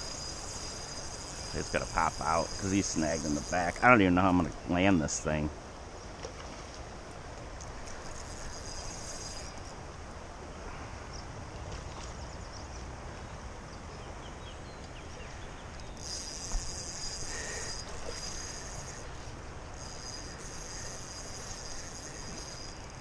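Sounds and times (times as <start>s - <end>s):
insects chirring: 0.0s - 5.5s, 6.2s - 9.9s, 15.2s - 23.0s.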